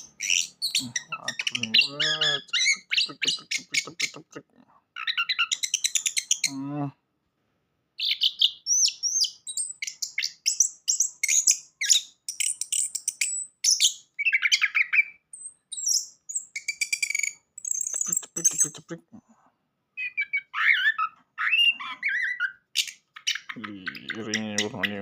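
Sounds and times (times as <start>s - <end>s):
bird singing chirps and whistles: 0.0s - 4.1s, 8.0s - 18.8s, 20.0s - 25.0s.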